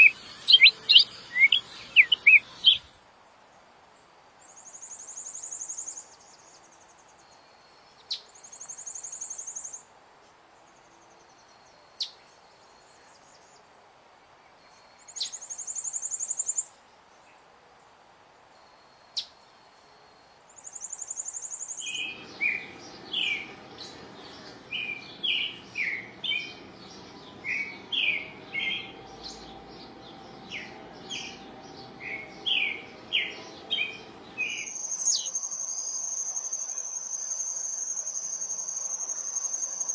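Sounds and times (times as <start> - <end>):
bird singing whistled notes: 0.0 - 2.9, 20.6 - 23.6, 24.7 - 39.9
high insect trills: 0.0 - 3.0.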